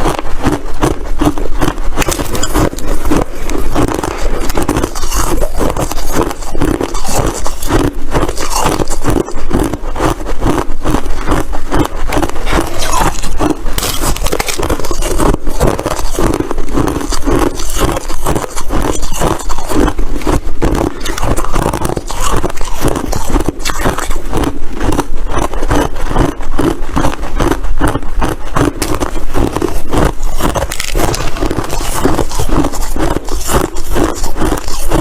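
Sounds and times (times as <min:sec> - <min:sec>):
ice being chewed: 0:00.0 - 0:35.0.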